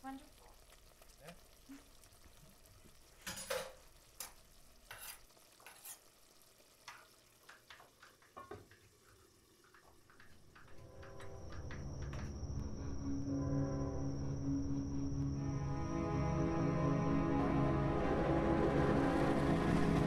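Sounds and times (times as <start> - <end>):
utensil scraping in a pan: 4.2 - 7.1.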